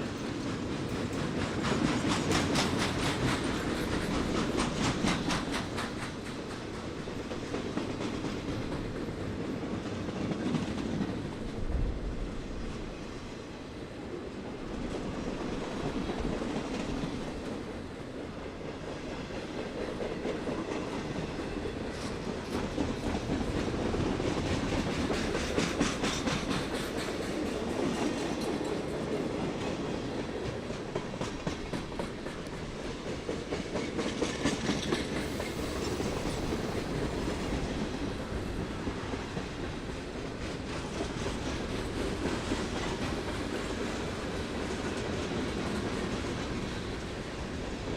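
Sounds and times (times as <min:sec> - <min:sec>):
wheels clicking over rail joints: 0:00.0 - 0:11.4
freight train rumbling past: 0:00.0 - 0:47.9.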